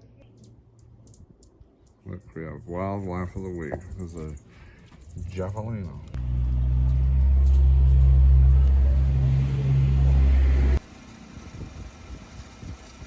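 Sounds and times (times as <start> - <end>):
faint outdoor ambience: 0.0 - 13.0
van engine and road noise: 5.2 - 13.0.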